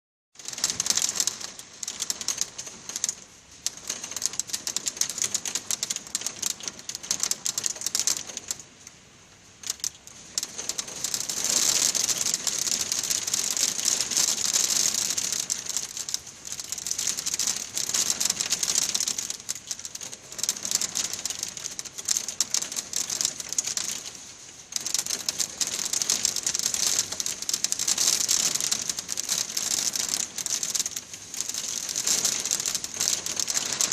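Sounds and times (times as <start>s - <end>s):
hail and rain on hard surface: 0.4s - 33.9s.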